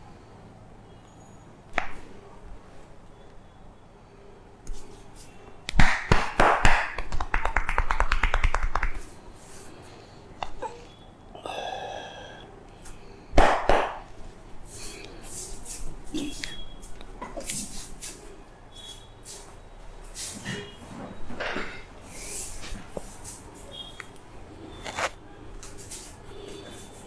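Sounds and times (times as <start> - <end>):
fast patting on a head: 5.7 - 9.1
hands slapping a head: 5.7 - 9.1, 13.4 - 14.1.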